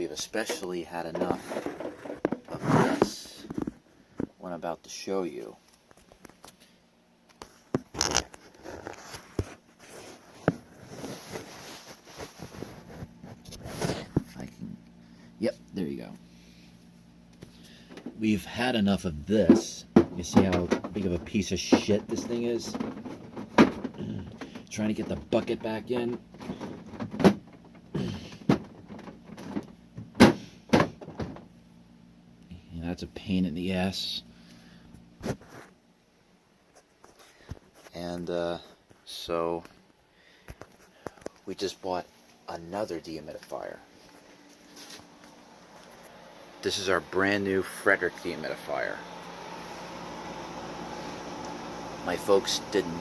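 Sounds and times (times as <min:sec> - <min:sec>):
scraping rattle: 0:00.4 - 0:03.2
plastic bucket scraping: 0:00.4 - 0:03.8, 0:19.5 - 0:29.7
rustling: 0:00.5 - 0:03.8, 0:08.0 - 0:14.1.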